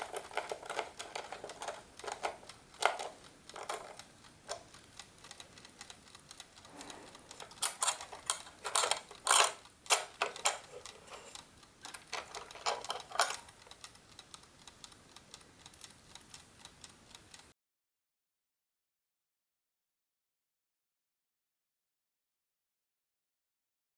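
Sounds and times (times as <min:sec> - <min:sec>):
clicks and knocks of wooden clock: 0:00.0 - 0:05.6, 0:06.4 - 0:14.0.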